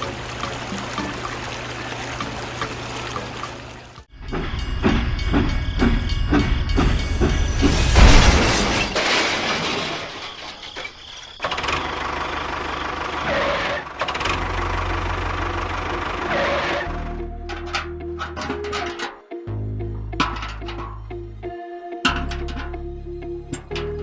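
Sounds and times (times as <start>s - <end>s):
engine chugging: 3.6s - 7.9s, 11.4s - 18.6s.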